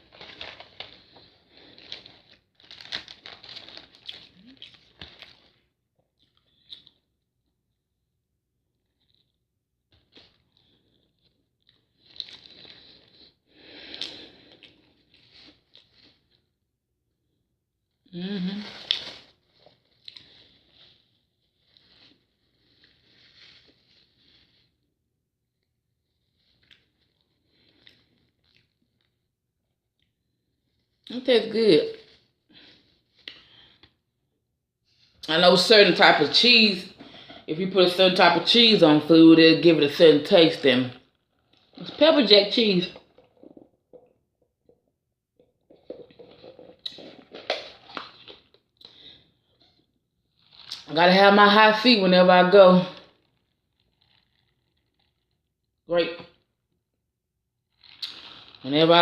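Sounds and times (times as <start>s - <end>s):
faint chewing food: 0.0s - 7.2s, 10.0s - 16.6s, 18.6s - 24.9s, 25.6s - 31.1s, 43.0s - 50.9s
person chewing food: 0.4s - 7.1s, 43.0s - 49.6s.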